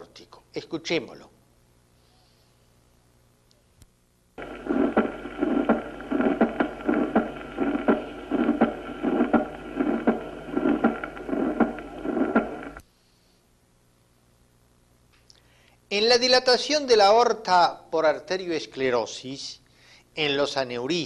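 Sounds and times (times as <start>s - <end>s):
steady background hum: 0.0s - 21.0s
heartbeat lub-dub: 4.4s - 12.8s.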